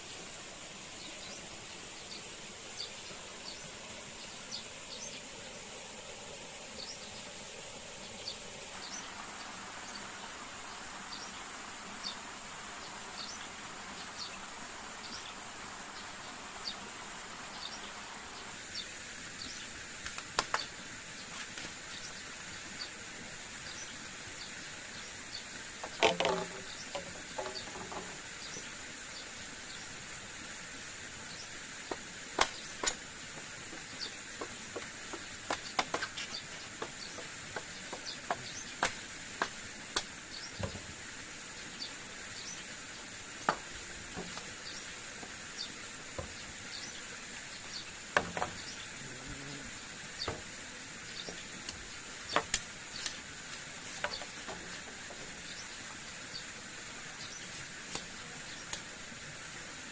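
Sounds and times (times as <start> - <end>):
background hiss: 0.0 - 59.9
sharp clicks and knocks: 25.8 - 28.2
high insect drone: 44.2 - 58.8.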